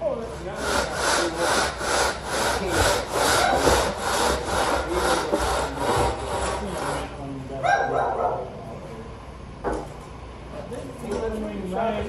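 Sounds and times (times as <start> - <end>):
straightedge scraping concrete: 0.3 - 7.2.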